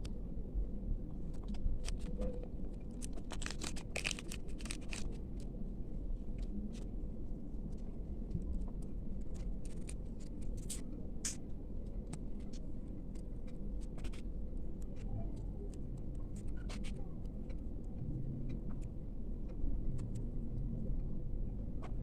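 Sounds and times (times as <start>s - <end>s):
steady low hum: 0.0s - 22.0s
packaging crinkling and scraping: 1.5s - 2.2s, 2.8s - 5.4s, 9.3s - 10.8s.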